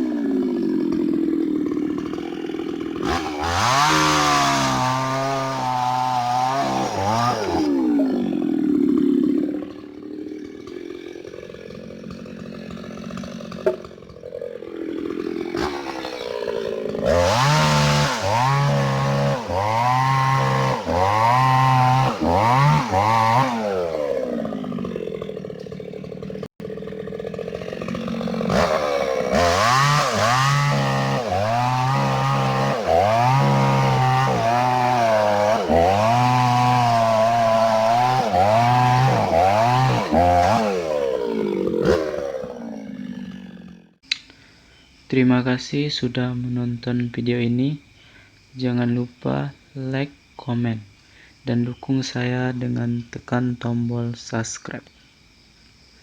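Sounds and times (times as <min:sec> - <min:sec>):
chainsaw cutting wood: 0:00.0 - 0:44.1.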